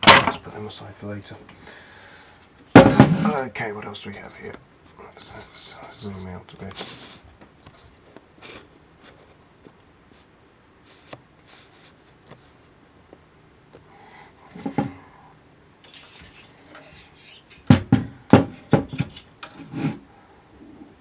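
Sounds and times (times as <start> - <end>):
parts handled on a workbench: 0.0 - 0.5, 2.7 - 3.4, 14.6 - 15.0, 15.8 - 20.1
clatter of knocks: 2.8 - 3.4, 17.6 - 19.6.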